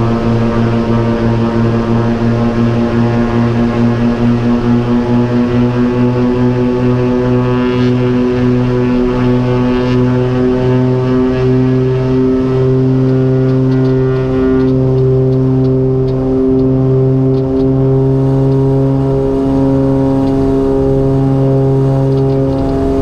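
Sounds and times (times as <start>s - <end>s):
twin piston aircraft engines droning: 0.0s - 23.0s.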